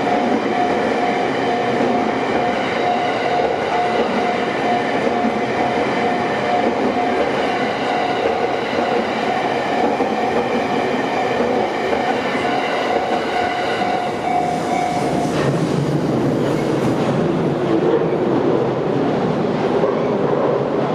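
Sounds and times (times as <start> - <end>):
train wheels clattering on rails: 0.0 - 18.0
crossing warning bell ringing: 10.8 - 15.3.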